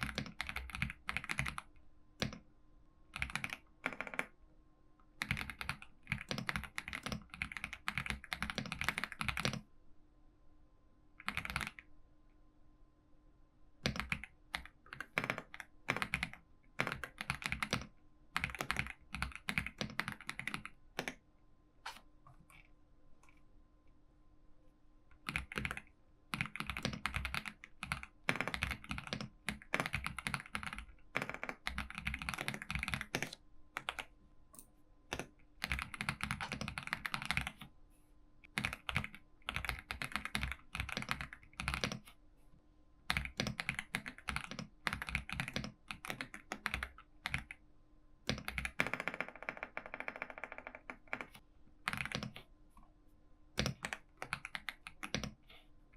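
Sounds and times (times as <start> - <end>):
computer keyboard typing: 0.0 - 2.4, 3.1 - 4.3, 5.2 - 9.7, 11.2 - 11.9, 13.8 - 21.2, 25.1 - 34.1, 35.1 - 37.7, 38.4 - 42.1, 43.1 - 47.6, 48.2 - 52.4, 53.6 - 55.5
faint steady hum: 0.0 - 55.9.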